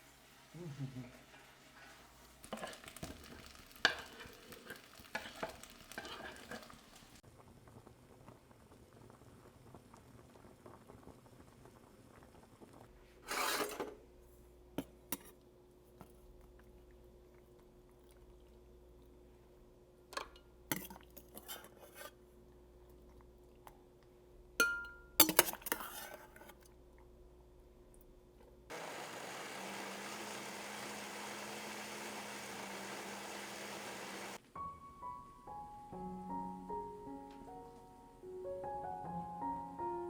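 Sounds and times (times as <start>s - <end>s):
dishes and utensils clattering: 2.5s - 7.1s.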